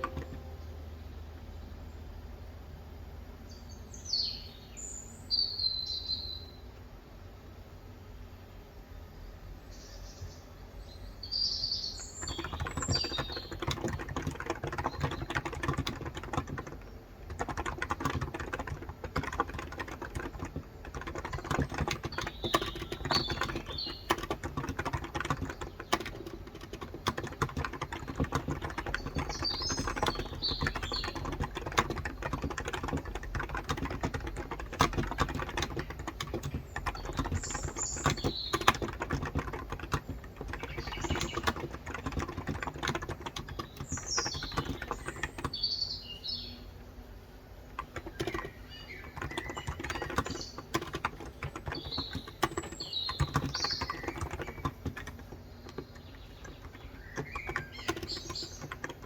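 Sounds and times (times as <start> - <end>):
typing on a keyboard: 0.0 - 0.8, 12.0 - 45.7, 47.7 - 59.0
small birds chirping: 0.0 - 2.0, 3.4 - 6.6, 9.1 - 46.9, 47.5 - 59.0.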